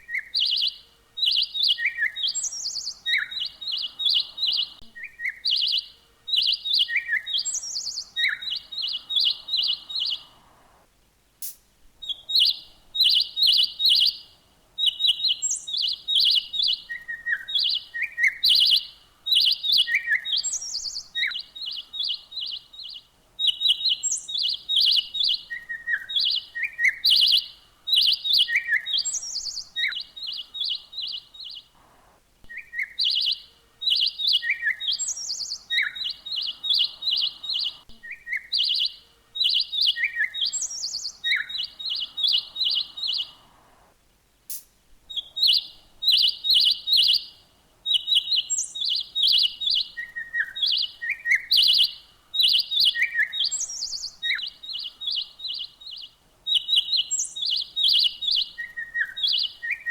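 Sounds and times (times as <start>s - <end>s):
songbirds chirping: 0.0s - 59.9s.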